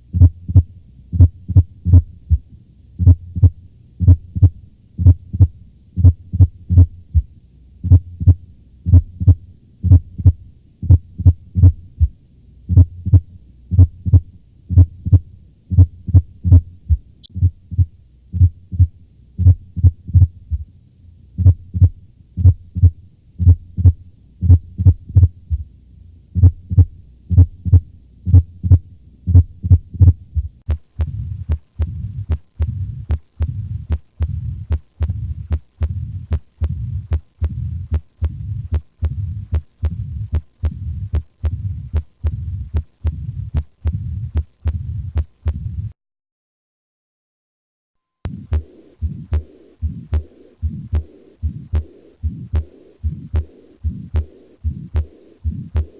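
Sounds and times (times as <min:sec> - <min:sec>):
heartbeat through stethoscope: 0:00.0 - 0:20.7, 0:21.4 - 0:25.7, 0:26.4 - 0:46.0, 0:48.3 - 0:55.9
heart murmur: 0:13.8 - 0:20.7, 0:21.4 - 0:25.7, 0:26.4 - 0:45.9, 0:48.3 - 0:55.9.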